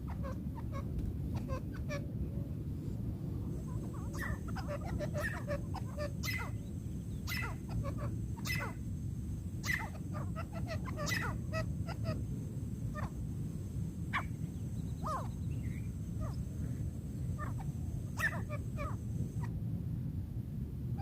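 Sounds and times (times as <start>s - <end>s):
low steady hiss: 0.0s - 21.0s
bird sharp calls: 3.7s - 8.8s, 9.6s - 12.2s, 14.1s - 16.5s, 17.2s - 19.5s.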